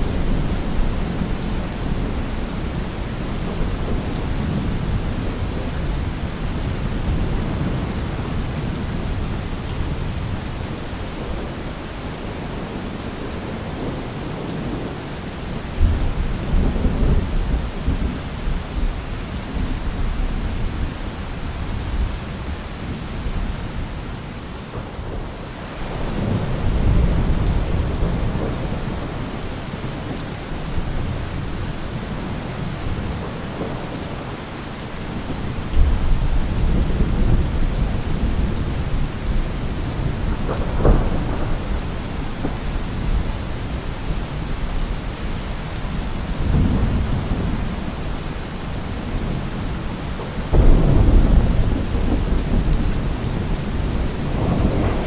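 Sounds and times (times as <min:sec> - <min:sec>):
heavy rain: 0:00.0 - 0:55.0
sharp thunder crack: 0:50.5 - 0:52.7
deep rolls of thunder: 0:50.5 - 0:55.0.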